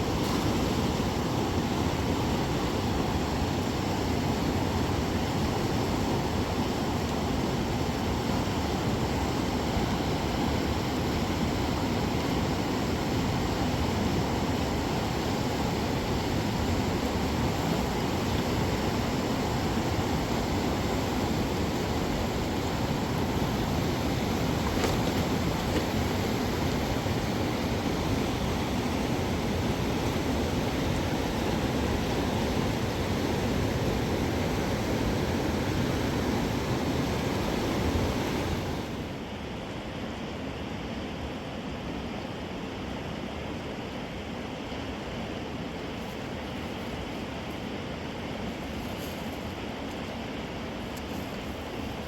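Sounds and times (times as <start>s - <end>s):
river water flowing: 0.0s - 40.3s.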